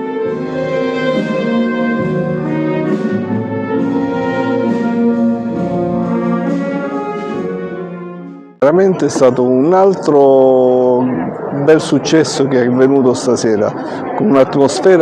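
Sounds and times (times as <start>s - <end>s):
wind band sustained chords: 0.0s - 10.2s.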